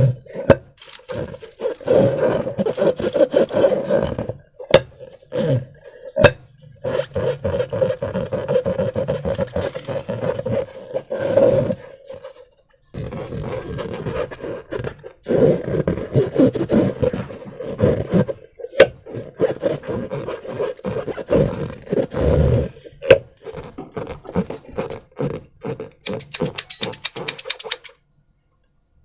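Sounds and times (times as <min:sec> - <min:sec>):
rubbery buzzing and squelching: 0:00.8 - 0:04.4, 0:06.8 - 0:12.3, 0:19.1 - 0:22.7, 0:23.4 - 0:27.9
fast rattling flutter: 0:26.1 - 0:27.9
sharp clicks: 0:26.1 - 0:28.0.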